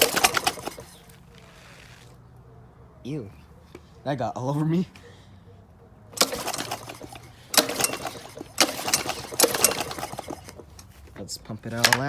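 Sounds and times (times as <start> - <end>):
engine recoil starter pulls: 0.0 - 2.2, 6.2 - 12.0
rough hissing pulls: 0.0 - 2.2, 6.2 - 11.0.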